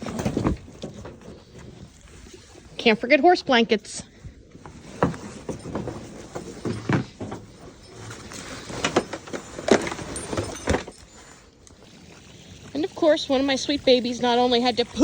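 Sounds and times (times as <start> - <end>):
metal buckles clinking: 4.6 - 12.0.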